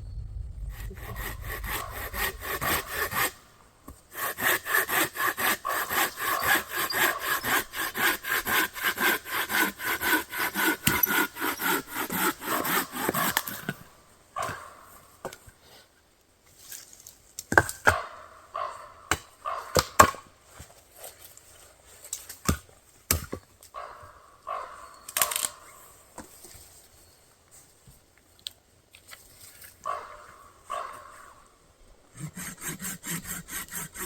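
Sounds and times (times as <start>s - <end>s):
hand saw strokes on wood: 0.7s - 13.8s, 32.2s - 34.0s.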